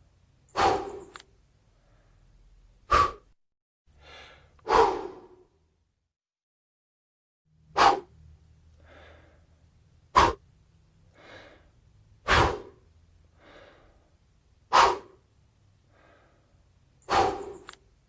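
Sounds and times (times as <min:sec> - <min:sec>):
sharp puffs of breath on microphone: 0:00.5 - 0:01.2, 0:02.9 - 0:03.4, 0:04.0 - 0:05.4, 0:10.2 - 0:10.4, 0:11.2 - 0:12.8, 0:14.7 - 0:15.2, 0:15.9 - 0:17.8
soft breathing: 0:00.6 - 0:03.3, 0:03.9 - 0:05.5, 0:08.7 - 0:10.4, 0:11.1 - 0:15.2, 0:15.8 - 0:17.8.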